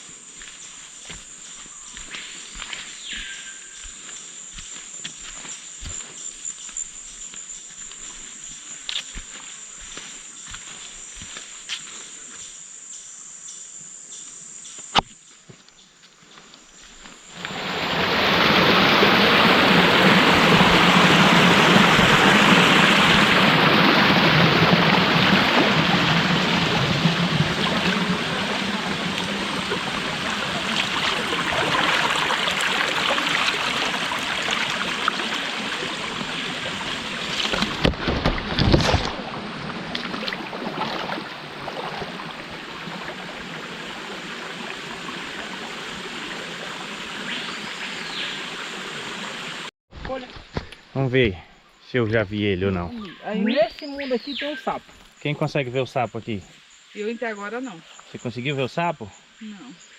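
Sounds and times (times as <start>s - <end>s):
stream rushing: 17.3s - 49.7s.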